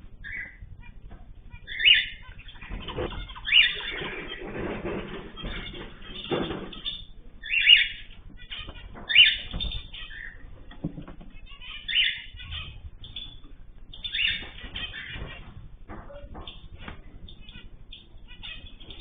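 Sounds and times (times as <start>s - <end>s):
cage birds calling: 0.0s - 19.0s
wings fluttering: 0.0s - 19.0s.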